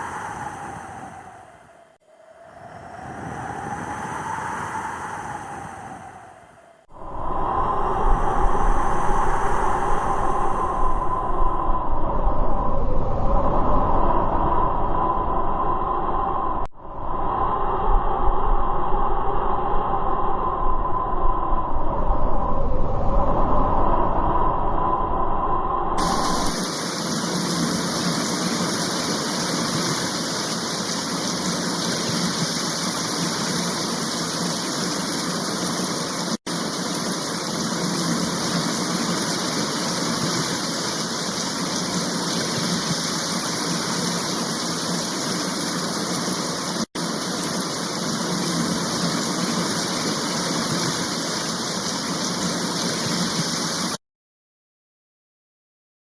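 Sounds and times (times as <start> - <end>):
rushing water: 26.0 - 54.0.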